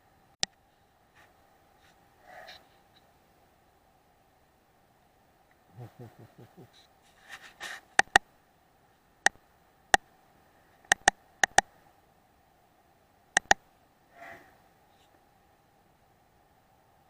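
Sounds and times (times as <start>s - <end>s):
sharp clicks: 8.0s - 8.2s, 10.9s - 11.7s, 13.4s - 13.6s.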